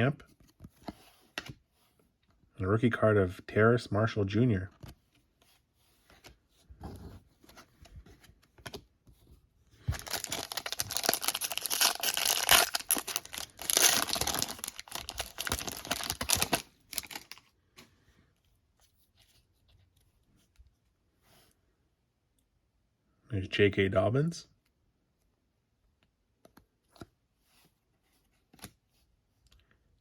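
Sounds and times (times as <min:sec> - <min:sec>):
plastic wrapper tearing and crinkling: 0:09.9 - 0:17.4
light clicks and rustles of handling: 0:17.2 - 0:21.6.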